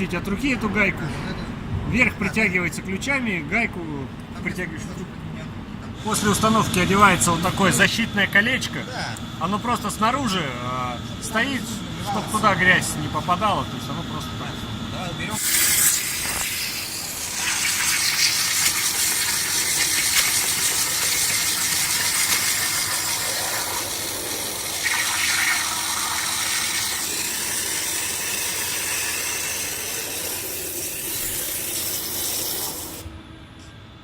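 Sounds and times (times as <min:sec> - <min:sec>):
water jet hissing spray: 0:15.4 - 0:33.1.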